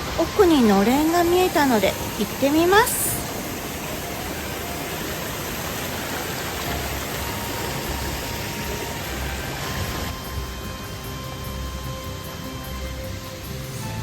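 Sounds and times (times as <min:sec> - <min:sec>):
waterfall and stream rushing: 0:00.0 - 0:10.2.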